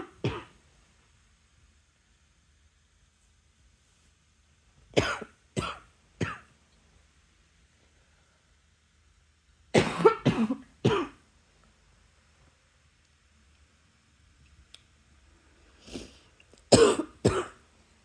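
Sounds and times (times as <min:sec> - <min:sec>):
person coughing: 0:00.0 - 0:00.6, 0:05.0 - 0:06.4, 0:09.8 - 0:11.2, 0:16.7 - 0:17.6.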